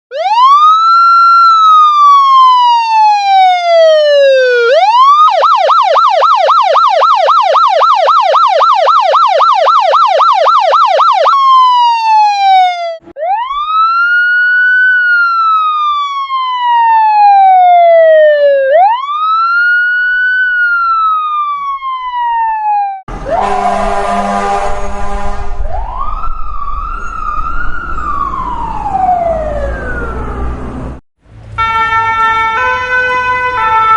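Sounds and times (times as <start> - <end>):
fire engine siren wailing: 0.1 - 33.9
emergency vehicle horn blast: 23.1 - 25.7, 31.6 - 33.9
engine rumble: 23.1 - 31.6.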